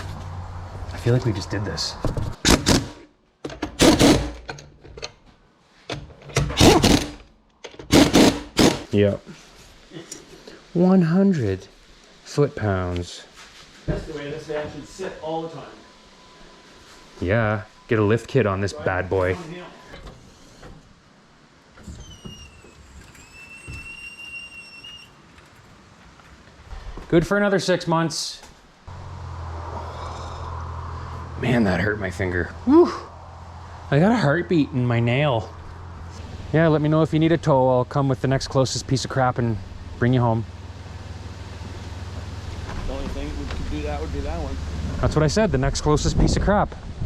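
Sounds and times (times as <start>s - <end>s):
impact wrench rattling: 6.3s - 8.9s
thin high-pitched squeal: 21.9s - 25.2s.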